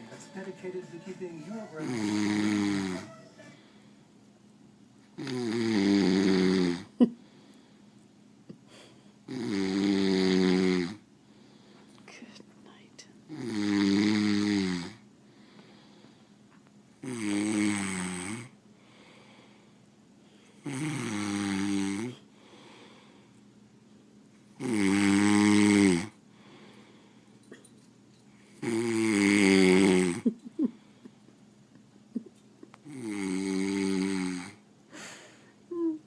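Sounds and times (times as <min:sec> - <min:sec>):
person snoring: 0:01.5 - 0:03.6, 0:05.2 - 0:06.9, 0:24.6 - 0:26.1, 0:28.6 - 0:30.2, 0:32.9 - 0:34.6.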